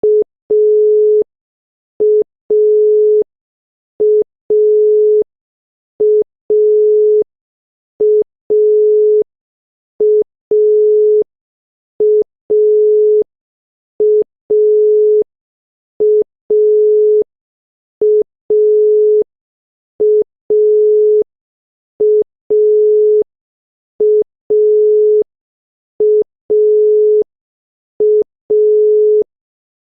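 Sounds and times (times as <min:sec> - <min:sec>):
telephone dial tone beeps: 0:00.0 - 0:01.3, 0:02.0 - 0:03.3, 0:04.0 - 0:05.2, 0:06.0 - 0:07.3, 0:08.0 - 0:09.3, 0:10.0 - 0:11.3, 0:12.0 - 0:13.3, 0:14.0 - 0:15.2, 0:16.0 - 0:17.2, 0:18.0 - 0:19.2, 0:20.0 - 0:21.3, 0:22.0 - 0:23.3, 0:24.0 - 0:25.3, 0:26.0 - 0:27.3, 0:28.0 - 0:29.3.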